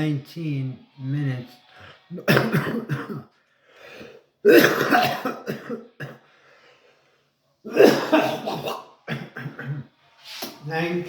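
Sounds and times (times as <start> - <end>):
person coughing hard: 2.2 - 3.3, 4.4 - 6.2, 7.7 - 9.9.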